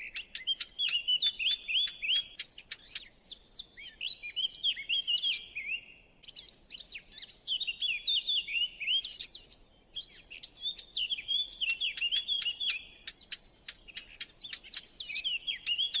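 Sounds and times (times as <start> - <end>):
songbird warbling: 0.0 - 16.0.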